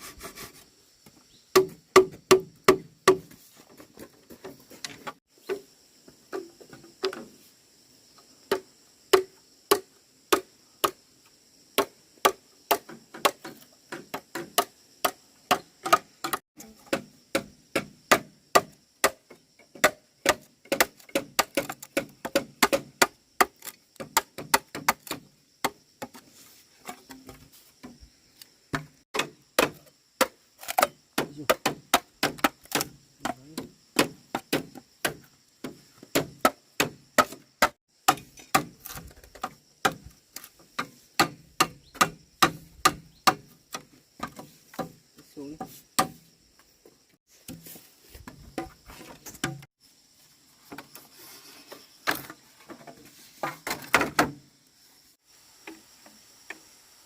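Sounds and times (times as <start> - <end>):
sharp knocks and cracks: 1.5 - 3.3, 11.8 - 26.2, 28.7 - 45.0, 46.0 - 46.2, 47.4 - 49.7, 52.0 - 54.4.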